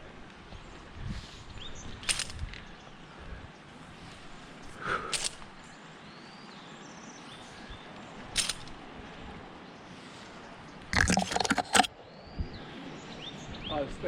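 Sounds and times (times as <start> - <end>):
birds chirping: 0.4 - 13.9
sharp click: 8.4 - 8.8, 11.0 - 11.9.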